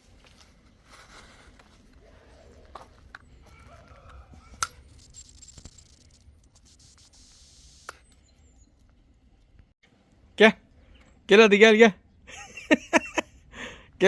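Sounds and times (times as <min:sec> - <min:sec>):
faint clicks: 0:04.6 - 0:07.9
high-pitched electronic tone: 0:04.6 - 0:07.9.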